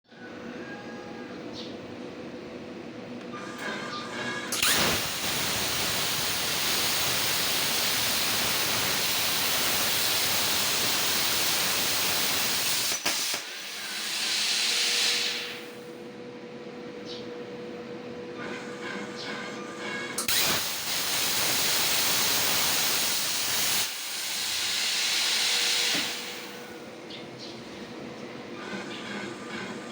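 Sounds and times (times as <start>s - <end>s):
plasma cutter arc hissing: 4.5s - 15.8s, 20.2s - 26.8s.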